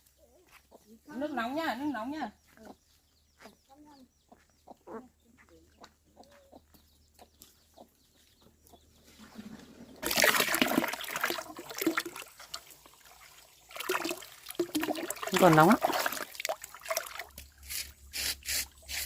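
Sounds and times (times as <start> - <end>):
chickens clucking: 0.0 - 1.2, 2.4 - 10.1
water poured and splashing: 10.0 - 19.0.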